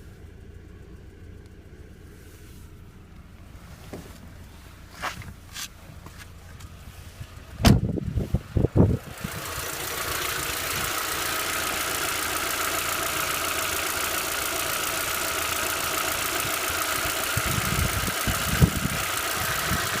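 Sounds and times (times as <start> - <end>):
car engine idling with lifter ticking: 0.0 - 20.0
loud engine thumps: 7.4 - 8.1.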